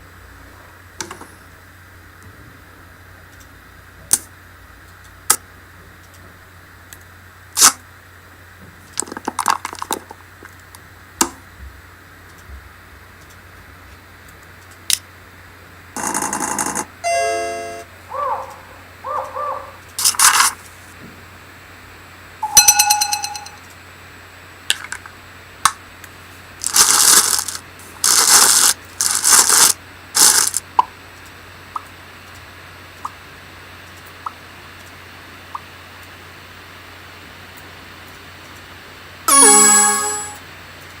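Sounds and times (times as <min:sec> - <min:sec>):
buzzy held tone: 0:17.0 - 0:18.0, 0:39.3 - 0:40.5.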